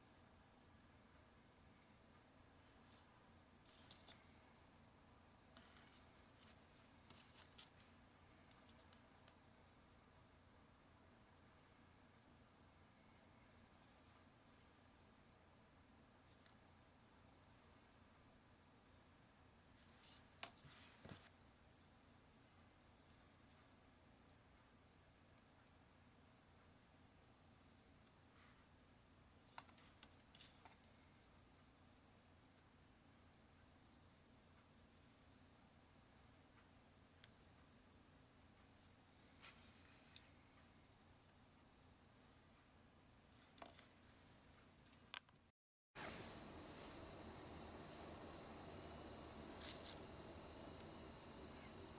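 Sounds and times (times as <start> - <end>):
high-pitched insect trill: 46.1 - 51.9.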